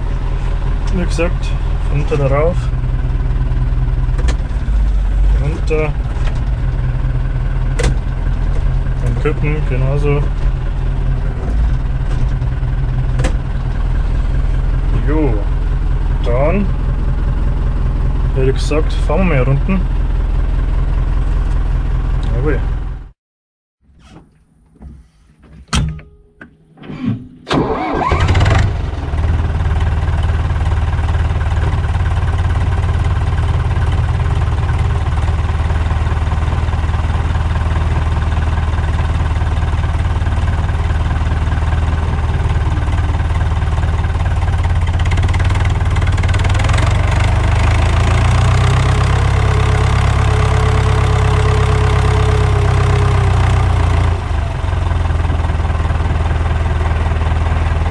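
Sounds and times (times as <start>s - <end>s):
tractor diesel engine running: 0.0s - 23.1s, 26.8s - 57.9s
knocks and clicks: 7.8s - 8.7s.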